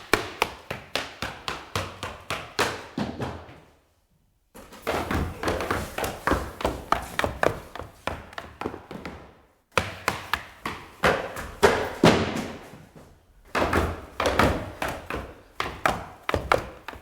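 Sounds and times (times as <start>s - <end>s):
footsteps on stairs: 4.6s - 17.0s.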